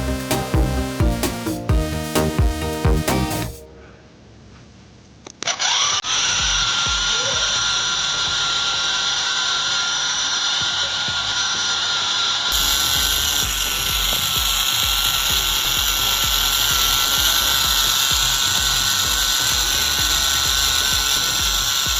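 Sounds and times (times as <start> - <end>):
background music: 0.0 - 4.0, 12.5 - 21.9.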